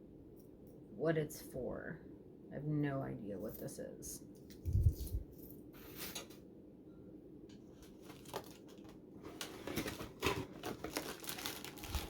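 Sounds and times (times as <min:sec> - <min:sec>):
wrapping crinkling: 0:07.8 - 0:12.0.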